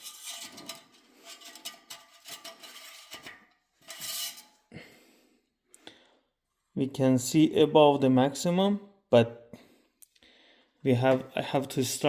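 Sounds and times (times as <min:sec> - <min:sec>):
dipstick scraping in tube: 0:00.0 - 0:04.6.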